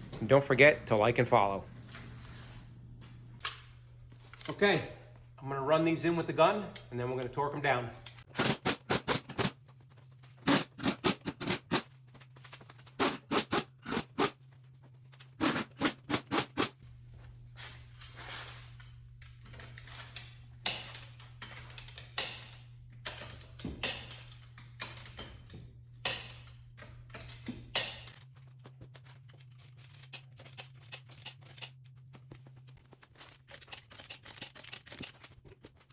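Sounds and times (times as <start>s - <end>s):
impact wrench hammering: 8.3s - 9.5s, 15.4s - 16.8s, 26.0s - 26.5s, 27.7s - 28.2s.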